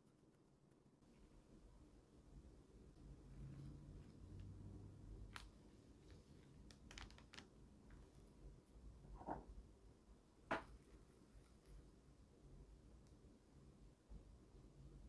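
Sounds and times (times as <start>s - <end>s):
plastic pieces clicking and tapping: 6.6s - 7.5s.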